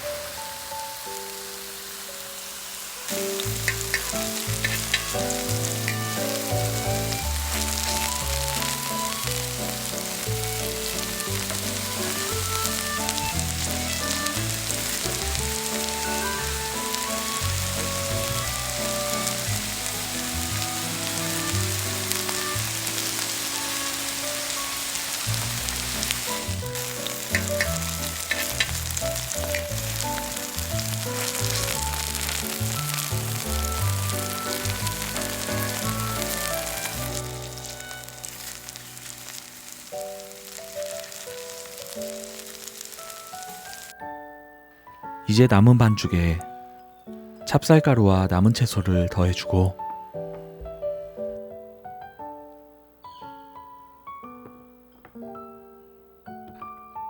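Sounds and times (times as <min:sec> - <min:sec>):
batter sizzling in oil: 0:00.0 - 0:44.0
background music: 0:00.0 - 0:57.0.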